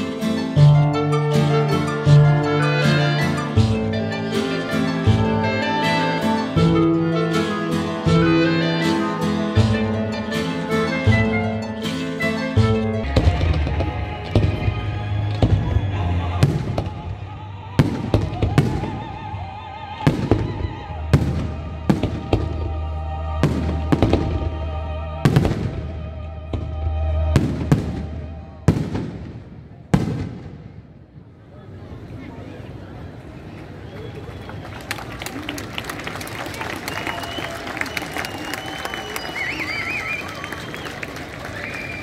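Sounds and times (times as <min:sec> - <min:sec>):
fireworks bursting: 0:25.2 - 0:31.0.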